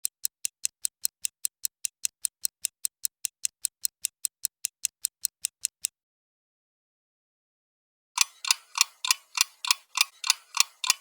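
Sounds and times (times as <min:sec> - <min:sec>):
clock ticking fast: 0:00.0 - 0:05.9, 0:08.2 - 0:11.0.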